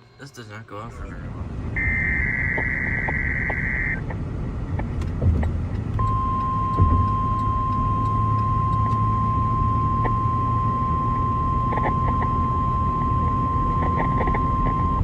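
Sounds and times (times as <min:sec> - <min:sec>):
low steady rumble: 0:00.0 - 0:15.0
steady warning alarm tone: 0:00.9 - 0:04.1, 0:06.0 - 0:15.0
buzzing digital data tone: 0:01.8 - 0:04.2, 0:06.0 - 0:15.0.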